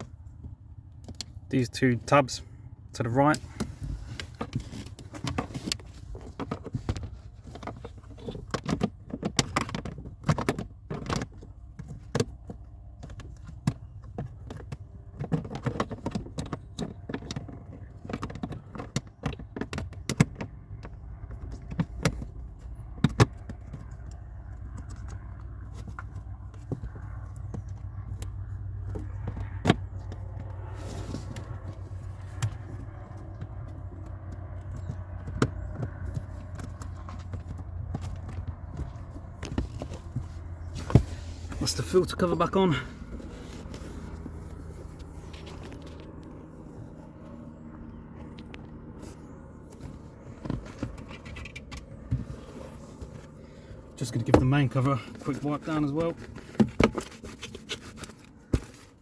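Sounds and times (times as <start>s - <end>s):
plastic cover clicking and rattling: 4.2s - 27.6s.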